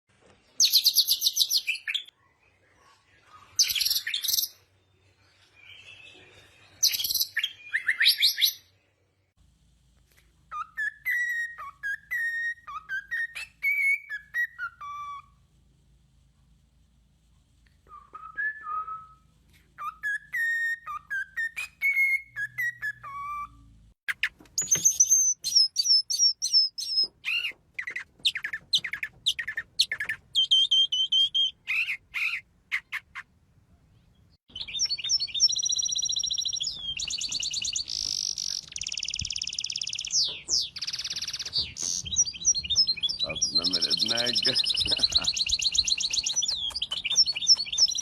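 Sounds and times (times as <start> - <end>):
birds whistling phrases: 34.5 - 48.0.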